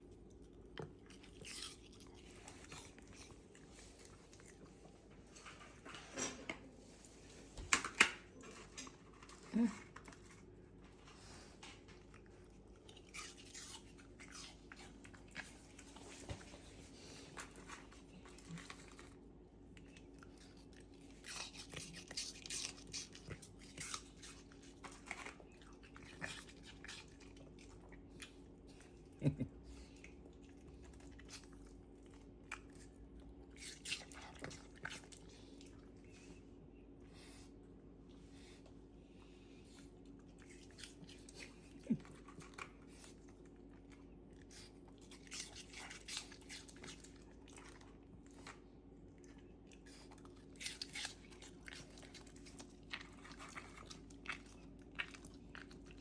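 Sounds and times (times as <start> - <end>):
dog crunching apple: 0.0 - 4.9, 11.9 - 19.2, 19.8 - 28.4, 30.3 - 35.4, 40.1 - 56.0
faint steady hum: 0.0 - 56.0.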